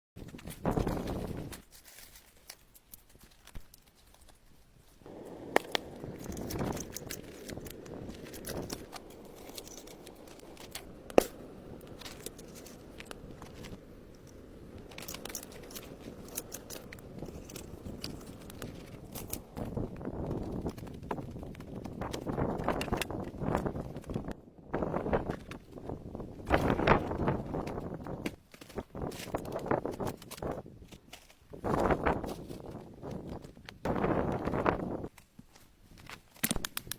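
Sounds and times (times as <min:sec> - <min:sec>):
crunching and rustling: 0:00.2 - 0:36.9
branches snapping: 0:34.6 - 0:36.9.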